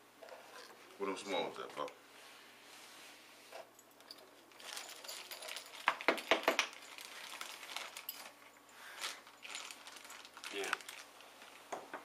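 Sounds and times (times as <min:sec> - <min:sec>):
metal screws clinking and rattling: 0:03.8 - 0:08.4.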